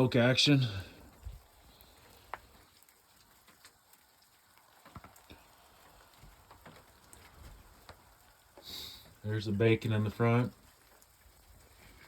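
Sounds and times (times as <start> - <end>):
faint crackles and ticks: 0.0 - 12.0.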